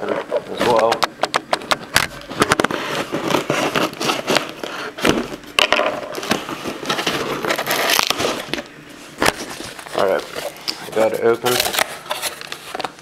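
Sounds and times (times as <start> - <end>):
packaging crackling: 2.1 - 13.0
scissors cutting packaging: 2.5 - 5.2, 6.1 - 8.6, 9.3 - 13.0.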